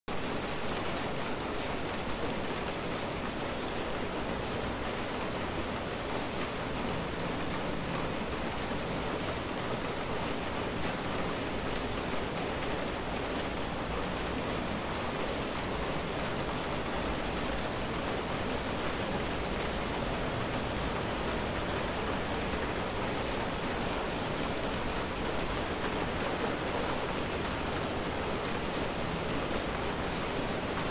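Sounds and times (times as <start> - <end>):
rain drops ticking: 0.1 - 30.9
rain falling on a street: 0.1 - 30.9.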